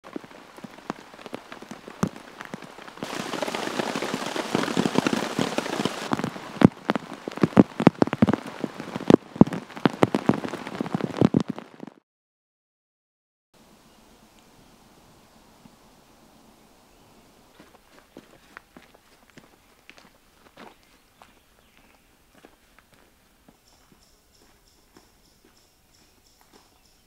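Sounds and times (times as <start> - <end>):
raindrops striking close by: 0.0 - 12.0
heavy rain hissing: 0.1 - 11.9.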